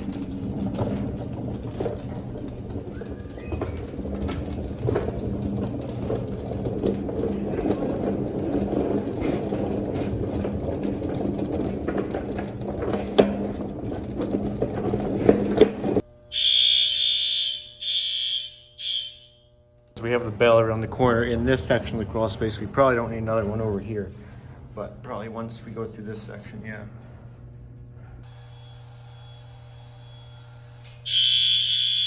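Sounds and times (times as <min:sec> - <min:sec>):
knocks and rustling: 0:00.0 - 0:16.0
steady low hum: 0:00.0 - 0:28.4
fire alarm horn blasts: 0:16.2 - 0:19.8, 0:31.0 - 0:32.0.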